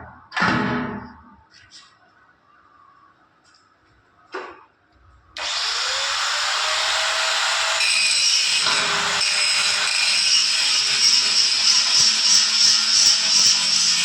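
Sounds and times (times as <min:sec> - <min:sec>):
angle grinder grinding metal: 0:05.4 - 0:14.0.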